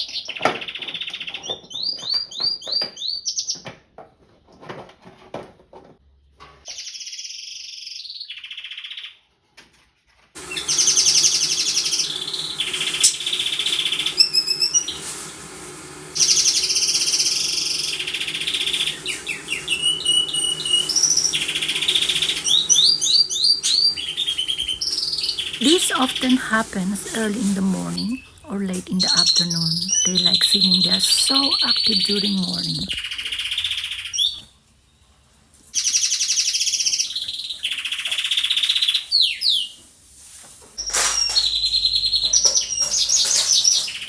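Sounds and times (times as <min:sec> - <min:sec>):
canaries singing trills: 0:17.4 - 0:34.4.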